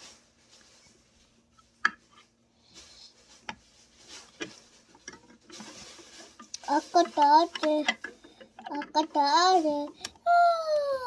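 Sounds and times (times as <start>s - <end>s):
light rubbing and rustling: 0.0s - 10.0s
toy kitchenware clacks: 6.5s - 10.2s.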